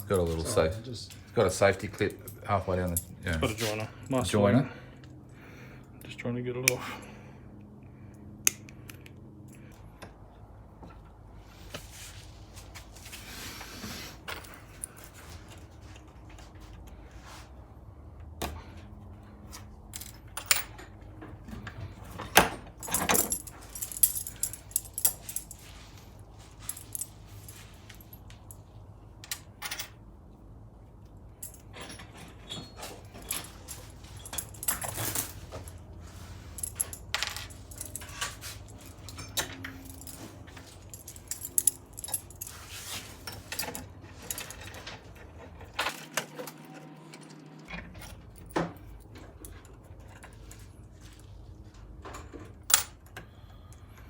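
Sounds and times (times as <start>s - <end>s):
metal chain clinking and rattling: 0.0s - 4.7s, 14.2s - 15.9s, 19.6s - 30.0s, 31.3s - 46.0s, 52.2s - 53.1s.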